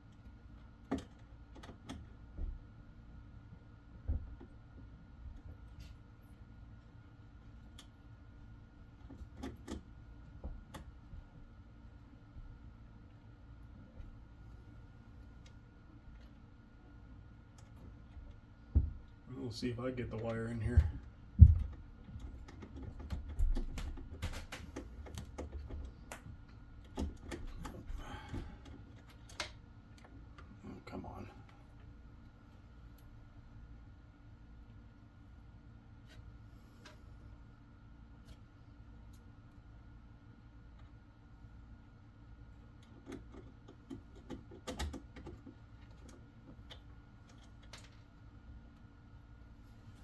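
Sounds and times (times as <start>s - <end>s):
small clicks and taps of wiring: 21.6s - 27.8s, 28.6s - 30.6s, 42.8s - 48.9s.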